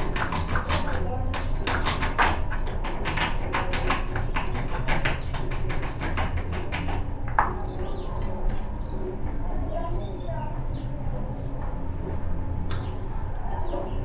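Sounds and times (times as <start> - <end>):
rapid sharp taps: 0.0 - 7.6.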